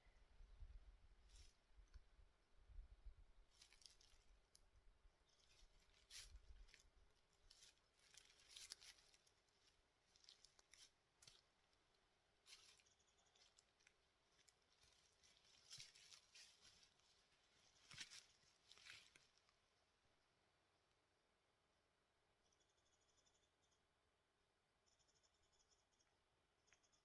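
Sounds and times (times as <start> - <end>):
faint rustles and clicks: 1.2 - 2.1, 3.4 - 19.6.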